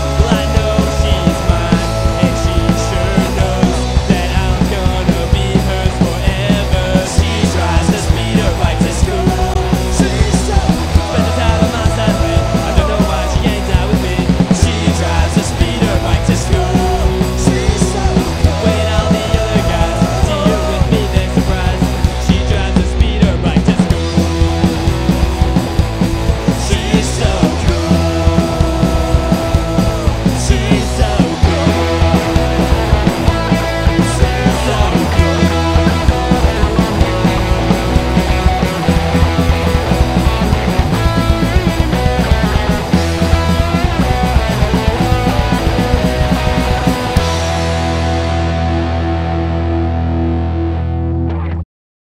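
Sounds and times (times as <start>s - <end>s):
steady drum beat: 0.0s - 49.3s
loud rock music: 0.0s - 51.6s.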